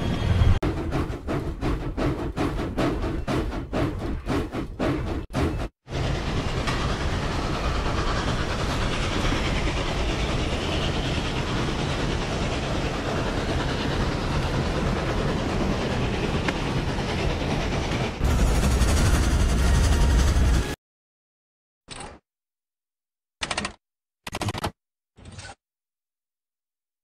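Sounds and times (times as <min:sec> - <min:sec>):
steam train rumbling on rails: 0:00.0 - 0:20.8.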